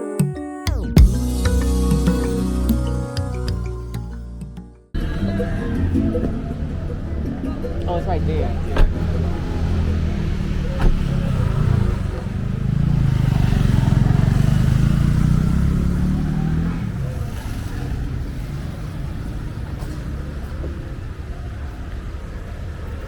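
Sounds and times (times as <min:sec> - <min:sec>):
vehicle engine rumbling: 0:00.8 - 0:23.0.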